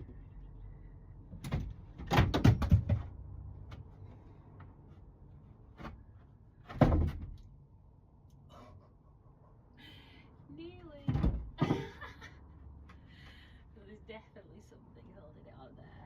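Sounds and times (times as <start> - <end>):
loud bangs of wooden panel: 1.4 - 3.2, 6.7 - 7.4.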